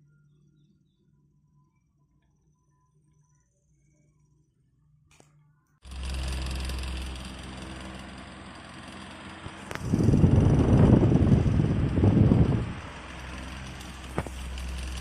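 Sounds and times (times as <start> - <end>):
electric fan motor humming: 5.8 - 15.0
loud low rumble: 5.9 - 15.0.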